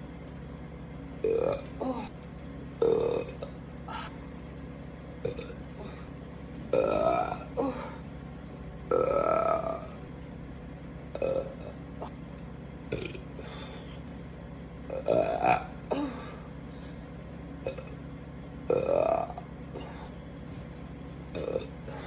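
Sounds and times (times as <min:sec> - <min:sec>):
woman burping: 0:14.9 - 0:16.3.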